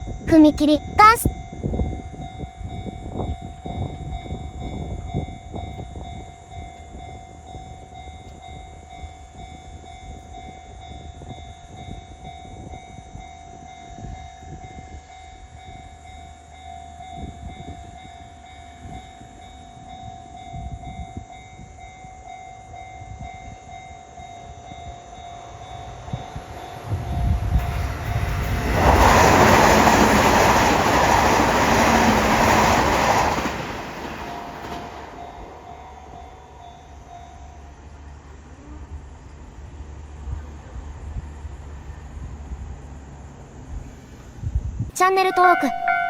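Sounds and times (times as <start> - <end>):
railroad crossing alarm clanging: 1.5 - 38.4, 45.2 - 46.0
train wheels rumbling on track: 16.9 - 44.8.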